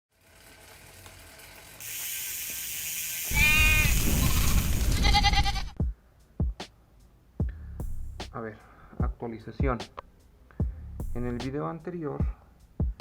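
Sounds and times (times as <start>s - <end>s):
hiss: 1.8s - 5.0s
goat bleating: 3.3s - 5.8s.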